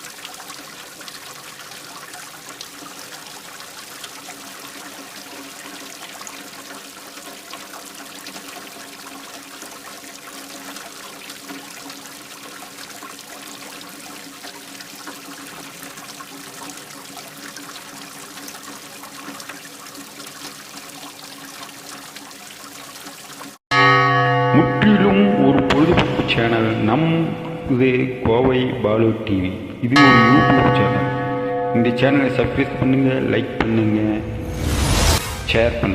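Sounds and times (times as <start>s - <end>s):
rainwater trickling into drain: 0.0s - 24.5s, 29.7s - 32.5s.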